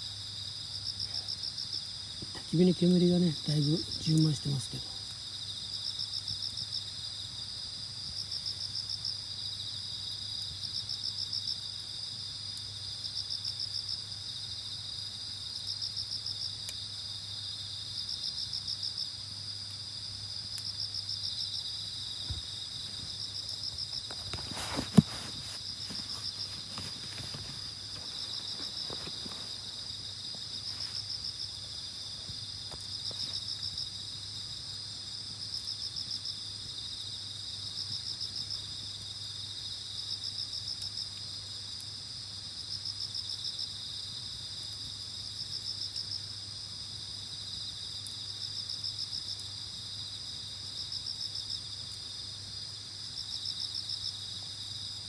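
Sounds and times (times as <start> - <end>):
insects trilling chorus: 0.9 - 7.6, 21.2 - 38.8.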